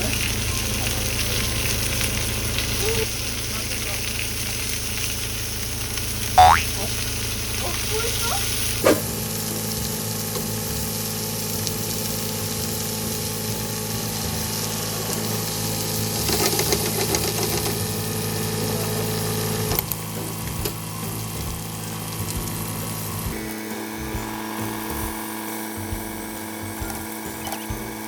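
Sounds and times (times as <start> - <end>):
constant low hum: 0.0 - 28.0
food sizzling in a frying pan: 0.0 - 28.0.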